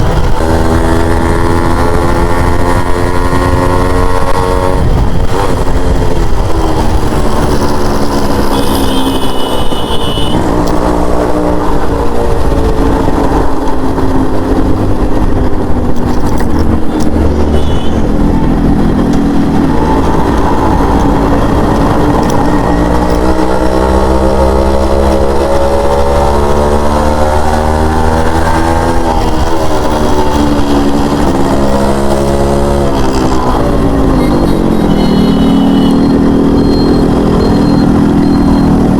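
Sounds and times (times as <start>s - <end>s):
two-stroke motorcycle engine revving: 0.0s - 38.9s
high-pitched horn tones: 6.8s - 10.6s, 16.8s - 18.2s, 34.1s - 38.9s.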